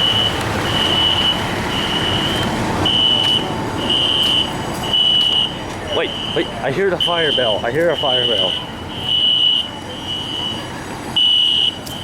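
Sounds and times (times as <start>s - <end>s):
fire alarm beeping: 0.0s - 12.0s.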